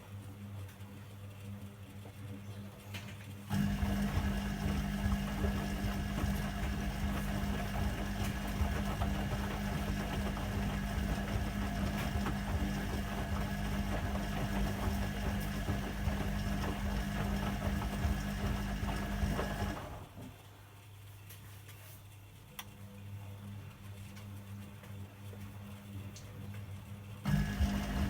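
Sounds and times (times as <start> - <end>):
washing machine running: 3.4 - 20.4, 27.1 - 28.0.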